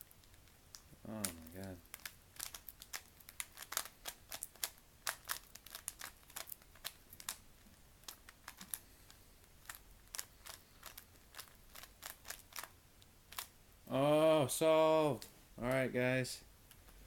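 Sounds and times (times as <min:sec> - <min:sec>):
puzzle cube clicking as turned: 0:00.2 - 0:07.4, 0:08.0 - 0:08.8, 0:09.6 - 0:12.7.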